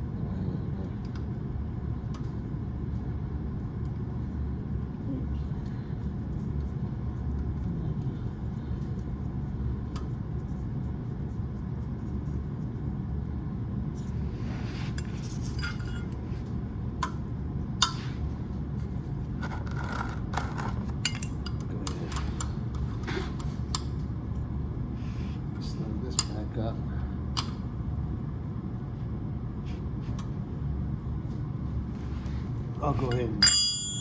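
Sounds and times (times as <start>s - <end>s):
steady low rumble: 0.0s - 19.4s, 20.8s - 34.0s
sharp metal clinks: 33.4s - 34.0s.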